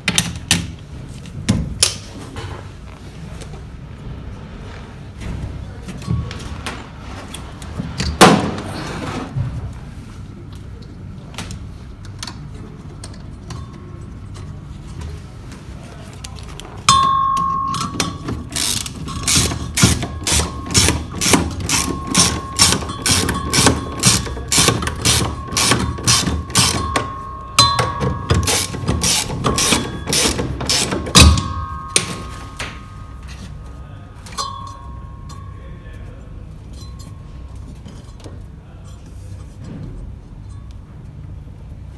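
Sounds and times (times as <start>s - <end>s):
ratchet wrench clicking: 17.7s - 32.1s
sharp metal knock: 19.3s - 33.0s.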